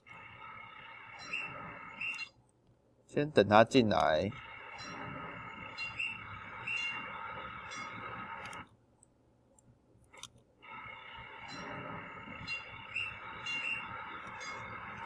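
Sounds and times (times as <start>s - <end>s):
bird chirping: 5.6s - 8.0s, 12.3s - 14.9s.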